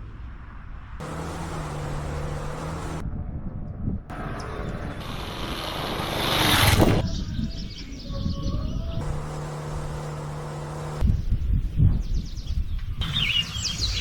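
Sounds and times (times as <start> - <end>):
motorcycle engine hum: 1.0 - 3.2, 4.1 - 7.6, 8.5 - 11.7
rush of noise: 4.1 - 7.0.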